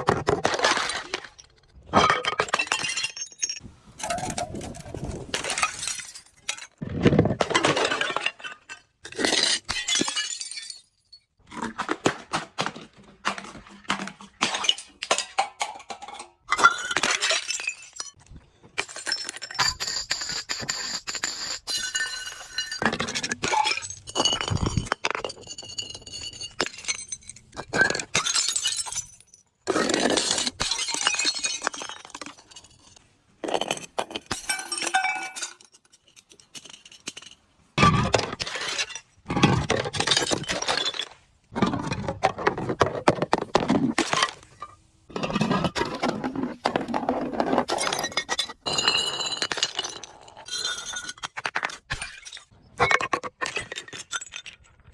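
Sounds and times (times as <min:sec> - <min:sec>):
glass breaking and crunching: 0:00.3 - 0:03.6, 0:05.4 - 0:11.5, 0:21.9 - 0:42.0, 0:47.7 - 0:54.9.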